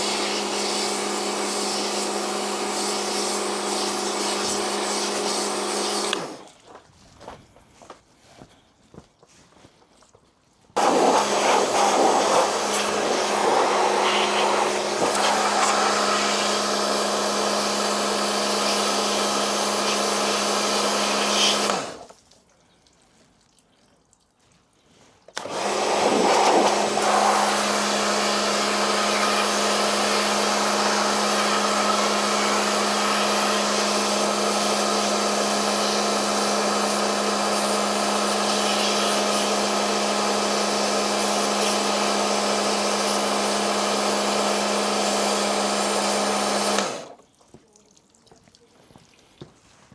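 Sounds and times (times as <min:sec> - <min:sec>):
electric cleaning tool humming: 0:00.0 - 0:06.5, 0:10.8 - 0:22.1, 0:25.4 - 0:47.2.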